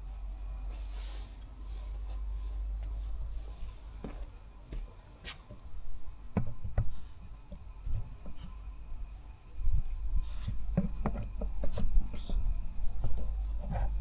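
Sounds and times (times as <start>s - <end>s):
light knocks and taps: 6.3s - 8.5s, 10.4s - 12.4s.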